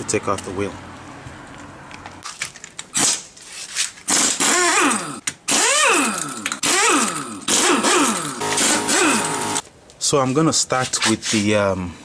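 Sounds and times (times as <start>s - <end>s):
power tool motor whine: 4.2s - 9.6s.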